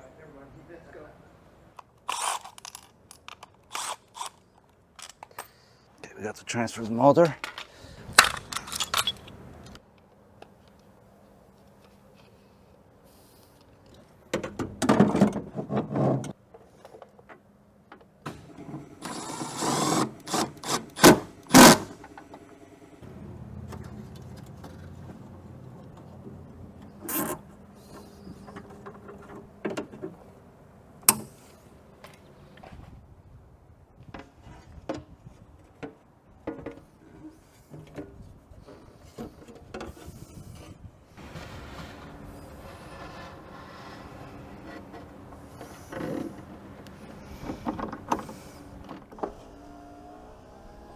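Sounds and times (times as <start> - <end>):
metal parts clattering and knocking: 7.2 - 9.8.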